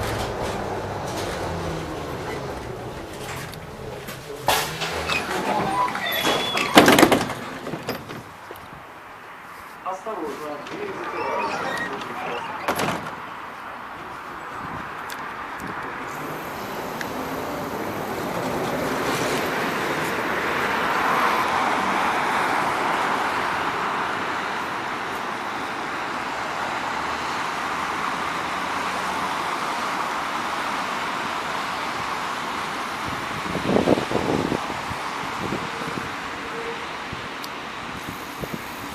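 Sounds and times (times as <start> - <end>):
tram wheels rolling on rails: 0.0 - 9.0, 10.4 - 13.6, 15.8 - 22.7.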